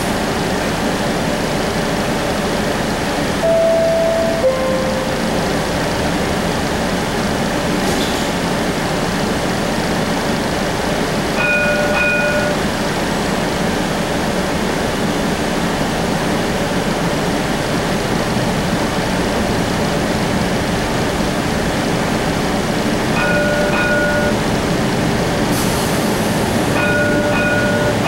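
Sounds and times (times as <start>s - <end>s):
streetcar rumble and hiss: 0.0s - 28.0s
brief electronic tone: 3.4s - 5.7s.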